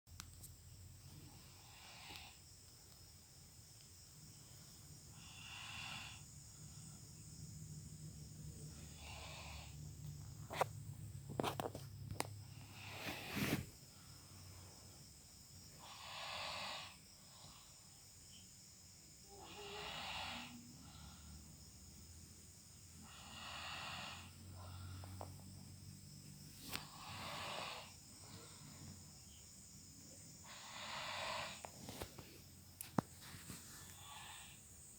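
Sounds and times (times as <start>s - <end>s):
person snoring: 19.3s - 21.0s, 26.8s - 28.0s.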